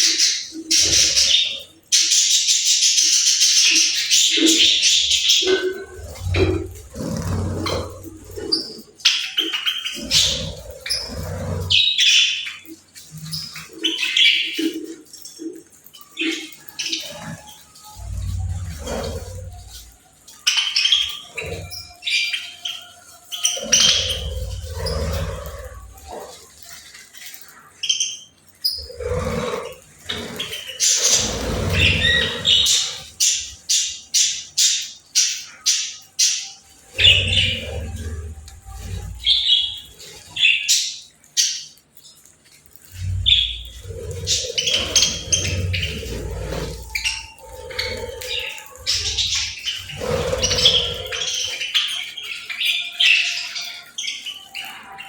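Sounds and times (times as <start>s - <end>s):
budgerigars chirping and squawking: 0.0s - 41.8s, 42.7s - 55.0s
budgerigars chirping: 30.0s - 36.4s, 43.2s - 53.5s.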